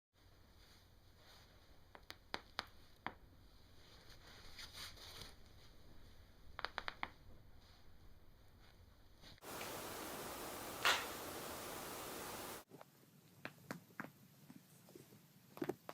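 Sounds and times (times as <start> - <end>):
soft rustle: 0.2 - 6.4, 7.3 - 12.6.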